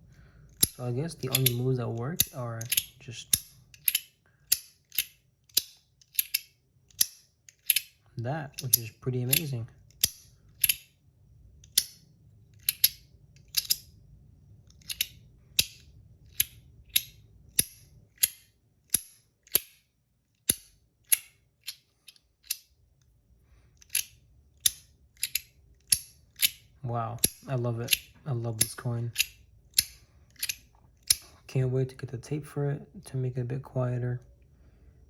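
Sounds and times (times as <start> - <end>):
fidget coin sliding clicks: 0.5 - 10.9, 11.6 - 13.9, 14.6 - 19.8, 20.5 - 22.7, 23.8 - 31.2.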